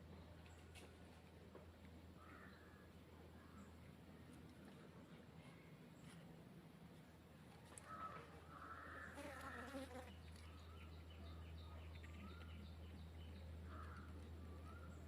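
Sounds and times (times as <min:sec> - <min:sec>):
honey bee buzzing: 0:09.0 - 0:10.2.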